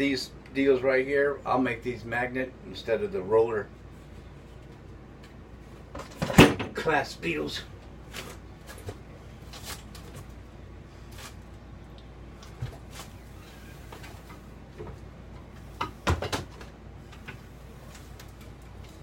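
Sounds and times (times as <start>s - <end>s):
steady low hum: 0.0s - 19.0s
cabinet doors clicking and knocking: 15.8s - 16.6s.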